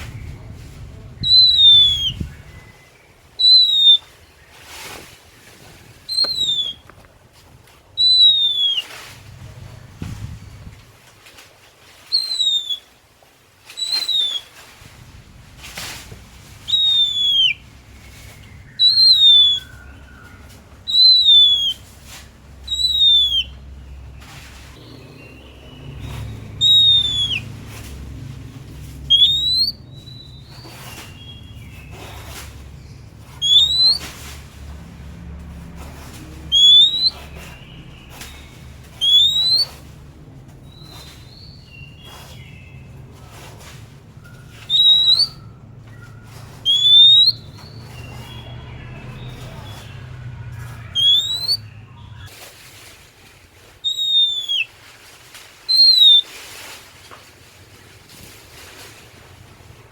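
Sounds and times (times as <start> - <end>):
bird whistling song: 0.0 - 4.6, 6.1 - 6.9, 8.0 - 9.6, 12.0 - 12.9, 13.7 - 14.6, 16.4 - 28.1, 29.0 - 34.4, 36.1 - 40.0, 40.6 - 52.3, 53.8 - 54.8, 55.7 - 56.3
faint low hum: 0.0 - 12.8.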